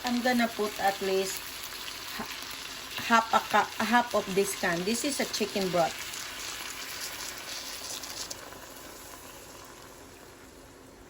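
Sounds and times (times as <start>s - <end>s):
hot pan sizzling: 0.0s - 11.0s
broth pouring from can: 5.9s - 10.8s.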